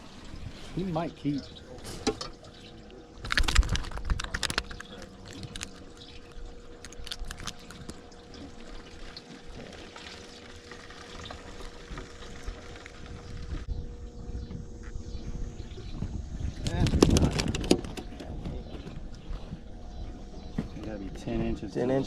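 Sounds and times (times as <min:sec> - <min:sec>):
faint steady hum: 0:00.0 - 0:22.0
sharp clicks and rattles: 0:03.2 - 0:08.0, 0:16.6 - 0:18.3.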